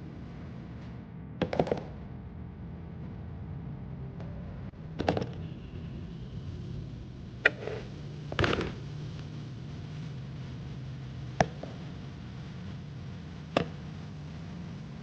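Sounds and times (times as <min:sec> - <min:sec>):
steady low hum: 0:00.0 - 0:15.0
plastic figurines knocking: 0:01.4 - 0:02.0.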